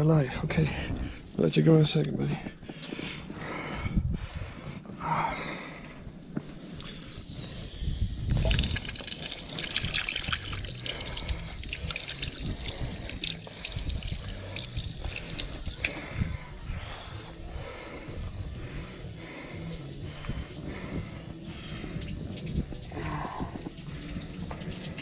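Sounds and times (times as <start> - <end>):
water splashing and trickling: 8.1 - 16.2, 18.6 - 25.0.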